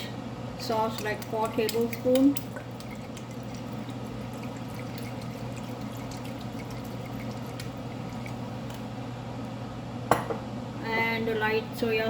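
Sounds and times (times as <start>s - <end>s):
broth bubbling in a pot: 0.6s - 9.1s.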